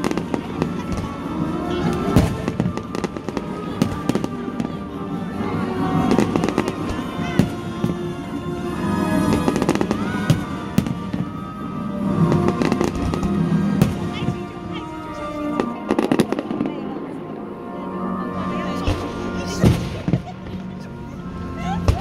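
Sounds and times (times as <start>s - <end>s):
fireworks bangs and crackles: 0.0s - 17.0s, 18.8s - 20.8s.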